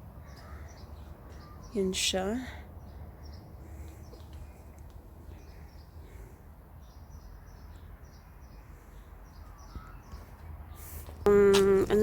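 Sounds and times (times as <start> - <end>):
faint bird chirps: 0.2 - 2.0, 5.3 - 11.0.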